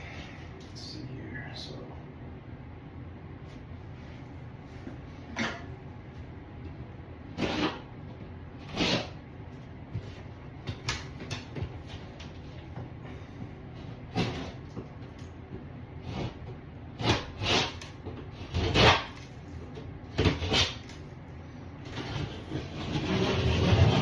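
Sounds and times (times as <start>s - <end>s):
scrapes and knocks of objects: 21.8s - 24.0s.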